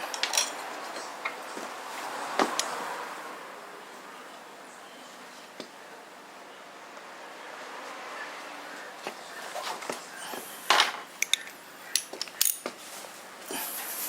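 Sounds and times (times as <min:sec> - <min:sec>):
metal tools clinking and clattering: 0:00.1 - 0:00.6, 0:10.7 - 0:12.7.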